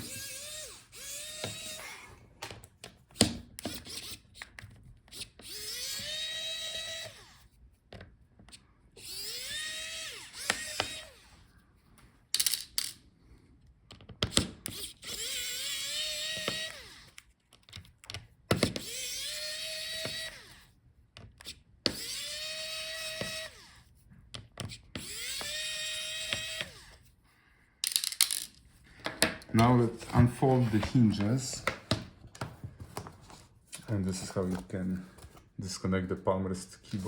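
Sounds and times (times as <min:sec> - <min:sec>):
electric screwdriver motor whine: 0:00.0 - 0:02.2, 0:05.1 - 0:07.5, 0:09.0 - 0:11.4, 0:14.7 - 0:17.3, 0:18.7 - 0:20.7, 0:21.9 - 0:23.9, 0:25.0 - 0:27.0.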